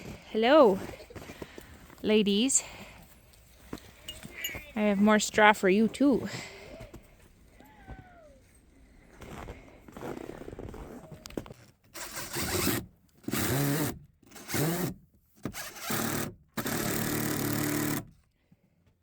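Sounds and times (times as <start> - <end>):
cordless drill driving screws: 12.0 - 18.1.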